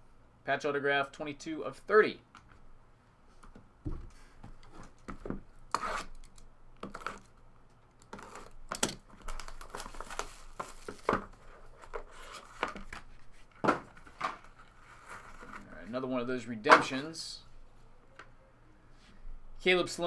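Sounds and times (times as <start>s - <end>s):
plastic wrapping tearing and crinkling: 8.0s - 12.6s.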